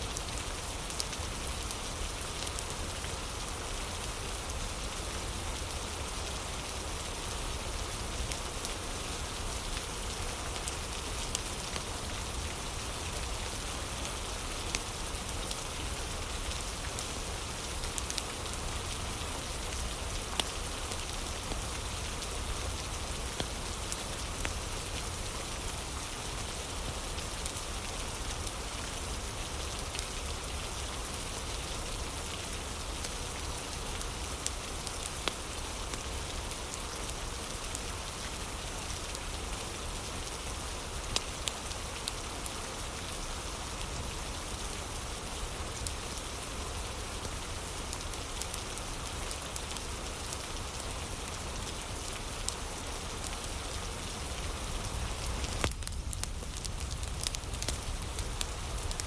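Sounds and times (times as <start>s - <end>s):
steady rain falling: 0.0s - 59.0s
sharp ticks and pops: 55.4s - 59.0s.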